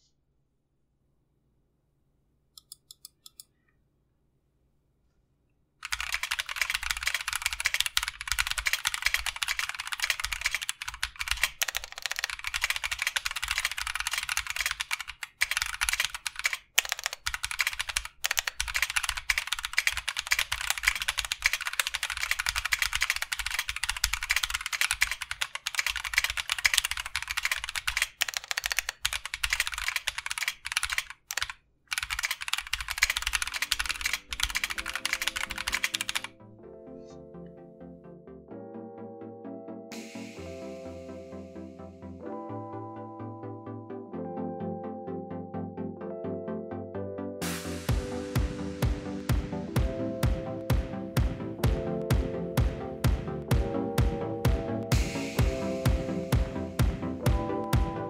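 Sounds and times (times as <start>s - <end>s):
mechanical keyboard typing: 5.8s - 36.3s.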